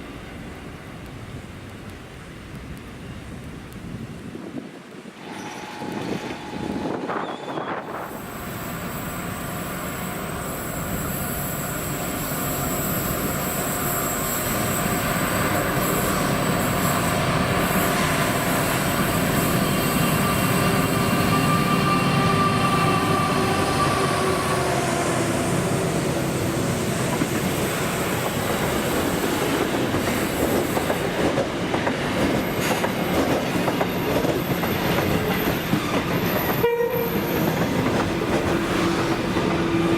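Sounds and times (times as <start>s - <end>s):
freight train wheels rumbling: 0.0s - 39.9s
high-pitched wheel squeal: 19.6s - 24.8s.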